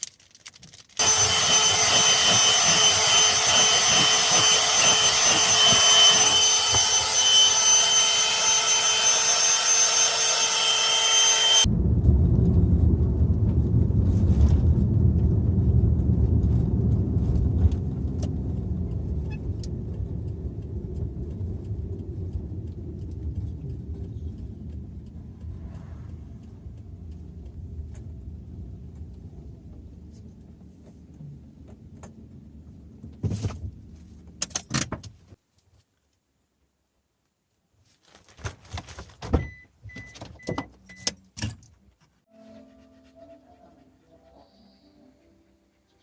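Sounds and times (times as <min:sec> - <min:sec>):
clicks and rattles: 0:00.0 - 0:01.0
car engine rumbling: 0:00.2 - 0:35.4.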